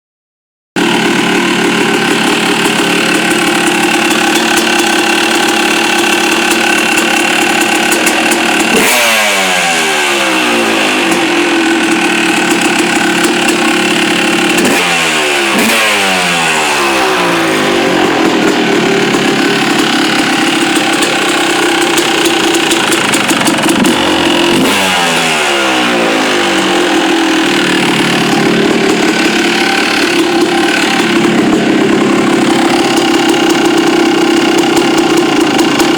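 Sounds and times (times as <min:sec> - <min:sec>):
two-stroke engine idling and revving: 0:00.8 - 0:35.9.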